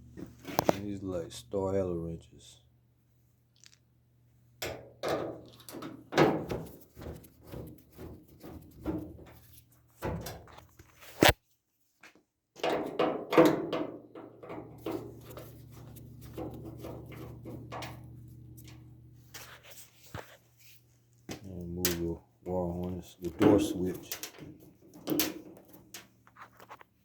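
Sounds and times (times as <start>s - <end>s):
metal panels knocking and clunking: 4.6s - 10.6s, 12.6s - 18.9s, 23.3s - 26.2s.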